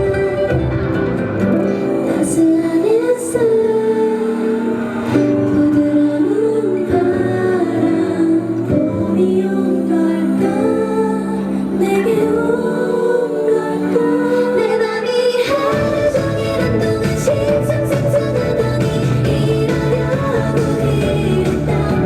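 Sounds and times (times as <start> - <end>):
backing track: 0.0 - 22.0
woman singing pop melody: 0.0 - 22.0
deep bass: 15.7 - 22.0.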